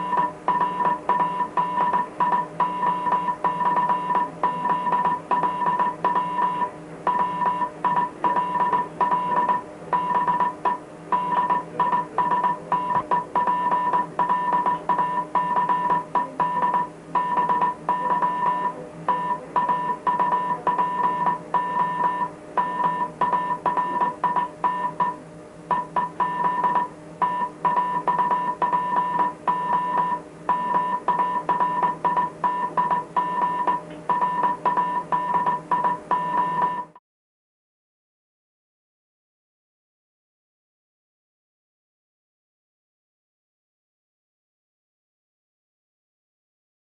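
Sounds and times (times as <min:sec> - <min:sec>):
low hum and radio hiss: 0:00.0 - 0:37.0
morse code beeps: 0:00.0 - 0:37.0.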